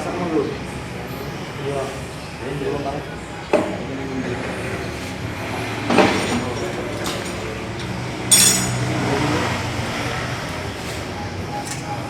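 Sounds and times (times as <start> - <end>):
metal tools knocking: 8.3 - 8.9
ringing metal clink: 8.3 - 9.0.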